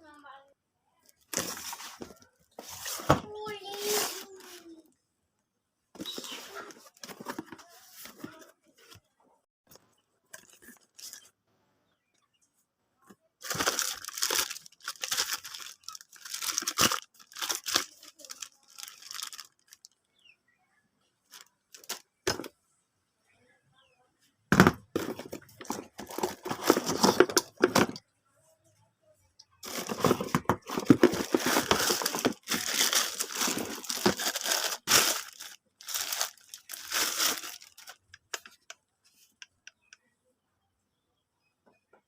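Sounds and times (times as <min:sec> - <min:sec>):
branches and leaves crackling: 0:29.6 - 0:38.1.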